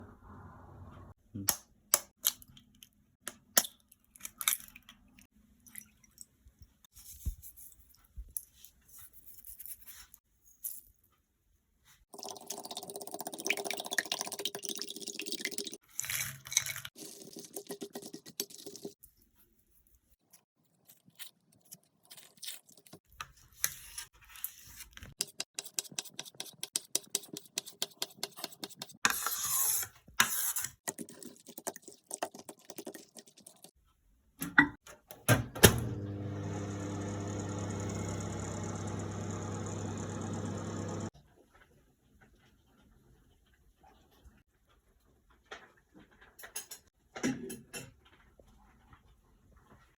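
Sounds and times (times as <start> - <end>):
fork beating eggs in a bowl: 25.2 - 29.3
microwave oven humming: 35.4 - 41.1.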